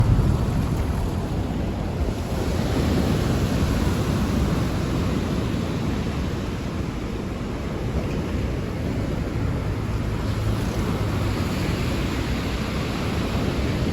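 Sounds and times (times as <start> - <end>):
rolling thunder: 0.0 - 3.7
heavy rain: 0.0 - 4.6.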